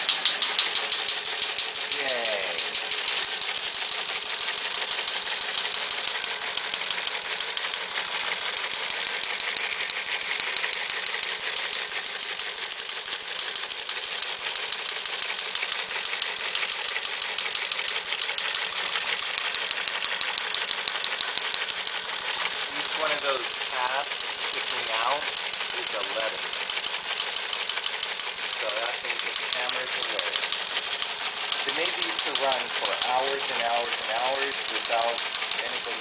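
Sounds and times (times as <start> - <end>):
teleprinter clattering: 0.0 - 36.0.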